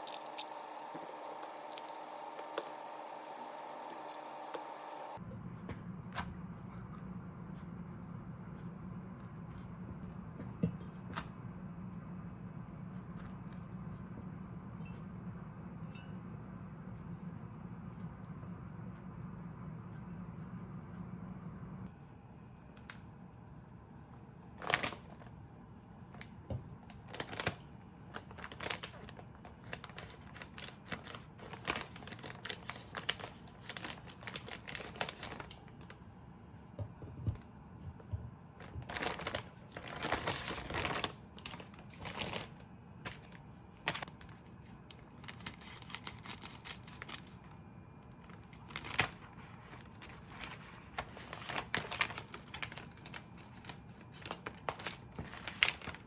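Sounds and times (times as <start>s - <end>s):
objects clicking and rustling: 0.0s - 2.8s
scraping or crinkling: 28.2s - 36.0s, 38.6s - 47.5s, 48.2s - 56.0s.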